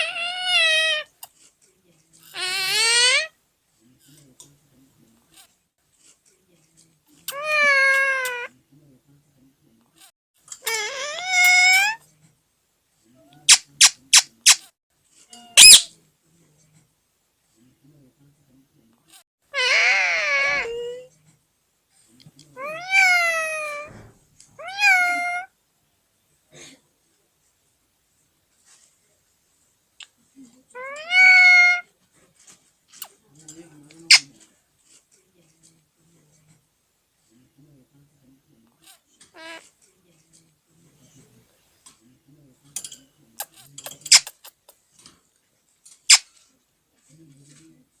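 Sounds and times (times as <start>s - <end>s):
parakeet mimicking cat meow: 0.0s - 1.1s, 2.3s - 3.3s, 7.3s - 8.5s, 10.6s - 12.0s, 15.3s - 15.9s, 19.5s - 21.0s, 22.6s - 24.0s, 24.6s - 25.5s, 30.8s - 31.9s
parrot harsh rasping calls: 0.0s - 1.1s, 2.3s - 3.3s, 7.3s - 8.5s, 10.6s - 12.0s, 15.4s - 15.9s, 19.5s - 20.8s, 22.6s - 23.9s, 24.6s - 25.5s, 30.8s - 31.9s.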